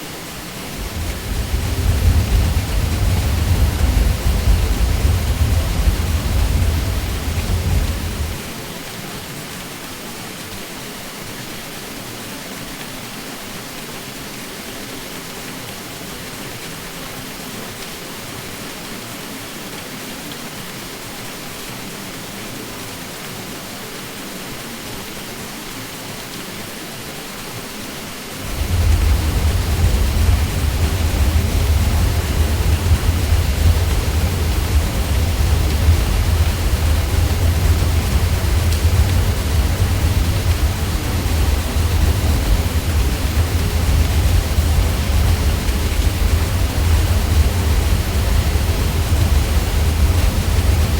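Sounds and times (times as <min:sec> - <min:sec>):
ceiling fan whooshing hum: 0:00.0 - 0:08.6, 0:28.4 - 0:50.9
deep low hum: 0:00.8 - 0:08.5, 0:28.4 - 0:50.9.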